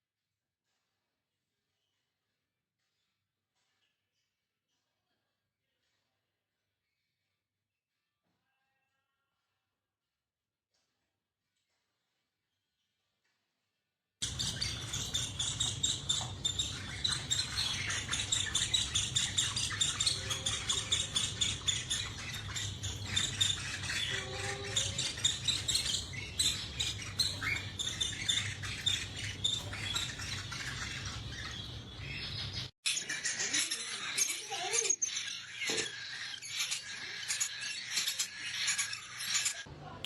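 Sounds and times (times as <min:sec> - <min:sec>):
parrots chirping: 0:14.2 - 0:40.0.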